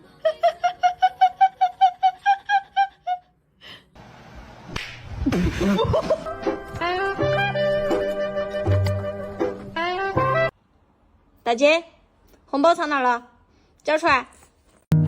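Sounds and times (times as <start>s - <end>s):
person giggling: 5.2s - 6.6s
music: 5.9s - 10.5s.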